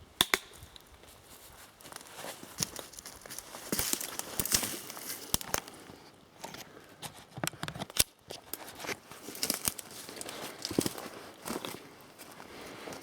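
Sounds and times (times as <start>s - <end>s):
twigs crackling and snapping: 0.2s - 1.2s, 1.8s - 5.9s, 7.8s - 11.8s.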